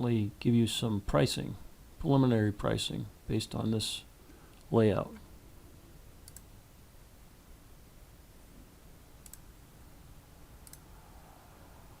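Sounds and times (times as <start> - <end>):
computer mouse clicks: 6.2 - 6.5, 9.2 - 9.5, 10.6 - 10.9.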